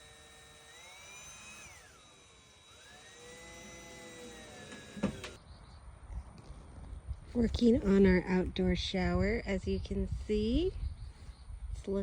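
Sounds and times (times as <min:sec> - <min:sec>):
cordless drill motor whirring: 0:00.0 - 0:05.4.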